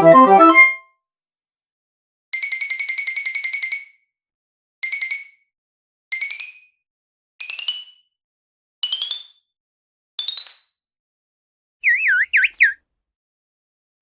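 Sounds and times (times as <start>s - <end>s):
cartoon fluttering trill: 0.0s - 0.8s, 11.8s - 12.8s.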